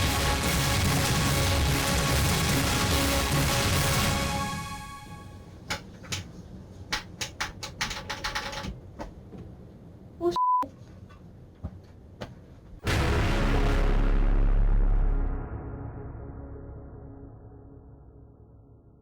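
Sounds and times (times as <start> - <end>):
music: 0.0 - 5.4, 12.8 - 19.0
short high beep: 10.4 - 10.7.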